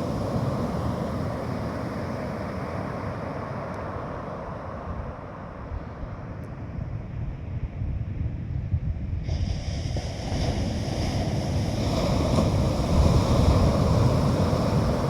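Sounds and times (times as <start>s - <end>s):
sea surf washing onto beach: 0.0s - 5.3s, 9.3s - 15.0s
wind buffeting microphone: 4.8s - 15.0s.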